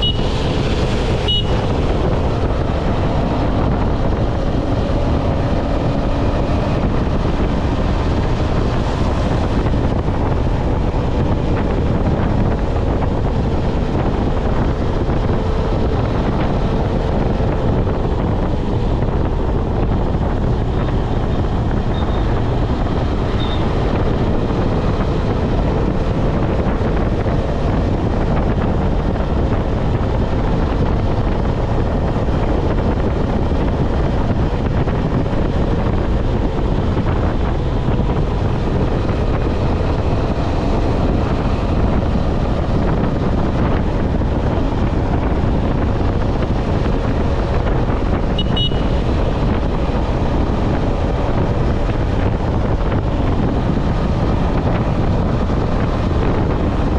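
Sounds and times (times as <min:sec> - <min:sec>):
motorcycle engine drone: 0:00.0 - 0:56.9
wind buffeting microphone: 0:00.0 - 0:56.9.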